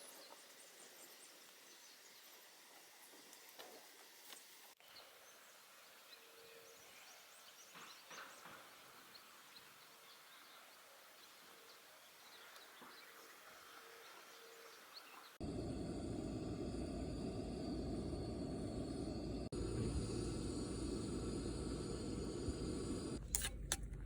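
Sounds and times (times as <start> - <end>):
loud steady low rumble: 15.4 - 24.0.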